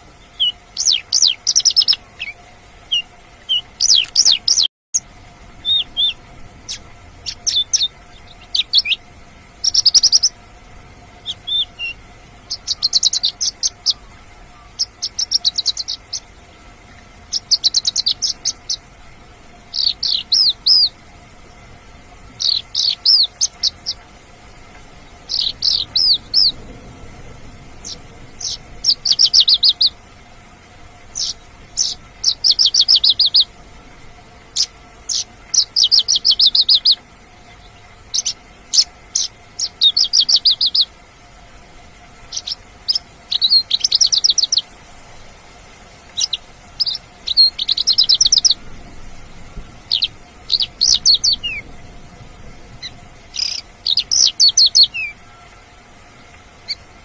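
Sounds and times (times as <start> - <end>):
lark chirps and trills: 0.0 - 10.4, 11.2 - 18.9, 19.7 - 21.0, 22.4 - 24.0, 24.9 - 26.6, 27.8 - 30.0, 31.0 - 33.5, 34.5 - 40.9, 42.2 - 44.7, 46.0 - 48.7, 49.8 - 51.8, 52.8 - 55.5, 56.6 - 56.9.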